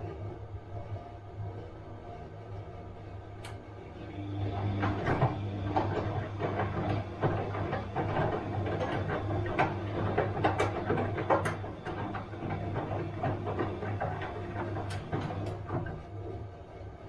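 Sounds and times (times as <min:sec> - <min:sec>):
washing machine motor hum: 0:00.0 - 0:17.0
clicks and knocks from tumbling drum: 0:04.6 - 0:16.0.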